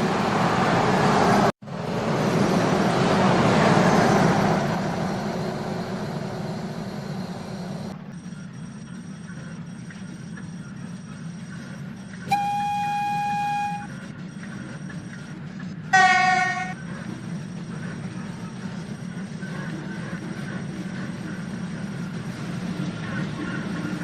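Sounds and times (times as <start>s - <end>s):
train horn blasts: 12.3s - 13.9s, 15.9s - 16.8s.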